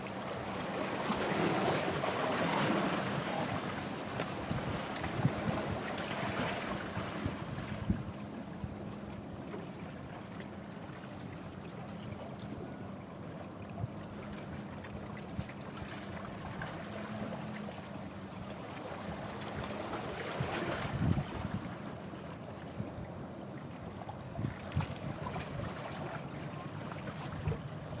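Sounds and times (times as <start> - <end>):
surf washing ashore: 0.0 - 8.2
wind: 0.0 - 28.0.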